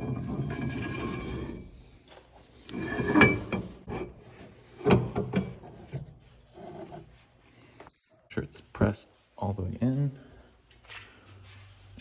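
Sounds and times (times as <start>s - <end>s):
metal scraping: 2.7s - 4.5s.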